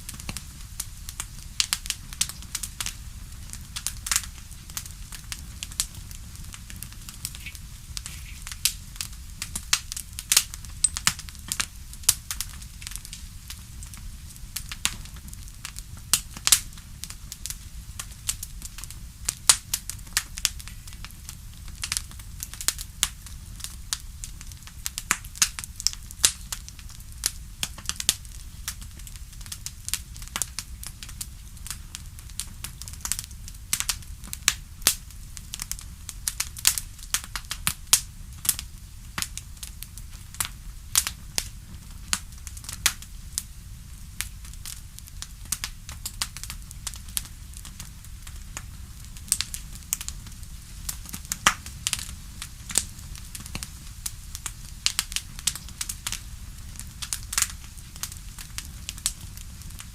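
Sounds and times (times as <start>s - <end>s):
bonfire crackling and popping: 0.0s - 59.9s
low rumble of burning wood: 0.0s - 59.9s.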